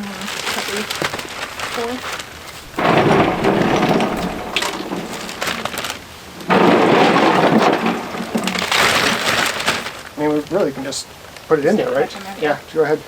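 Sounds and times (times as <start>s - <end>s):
ice and water pouring: 0.0s - 10.2s.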